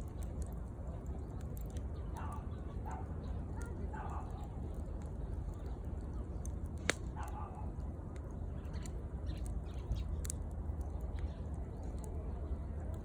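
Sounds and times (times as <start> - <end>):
campfire crackling: 0.0 - 13.0
sharp fire pop: 6.8 - 7.1.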